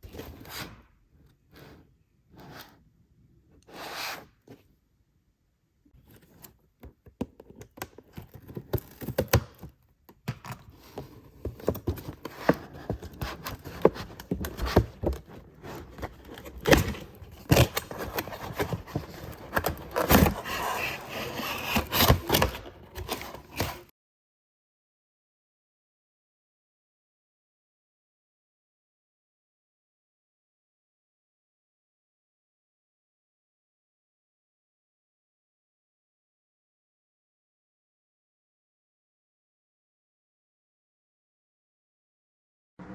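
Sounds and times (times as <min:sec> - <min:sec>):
handling toys and packaging: 0:10.5 - 0:23.9.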